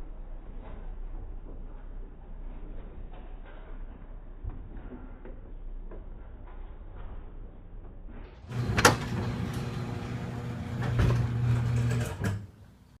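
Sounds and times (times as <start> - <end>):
garage door humming: 8.3 - 13.0.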